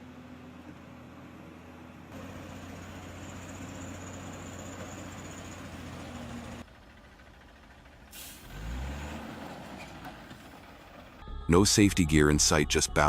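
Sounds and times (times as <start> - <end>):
heavy vehicle engine running: 0.0 - 11.3
short hiss: 8.2 - 8.6
engine rising and falling in pitch: 8.2 - 11.5.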